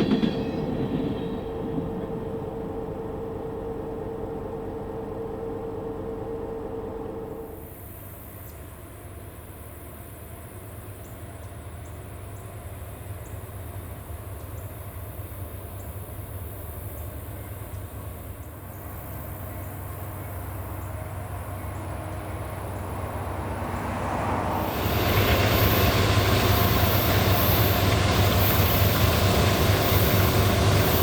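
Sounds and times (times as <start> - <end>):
diesel locomotive engine rumble: 0.0 - 31.0.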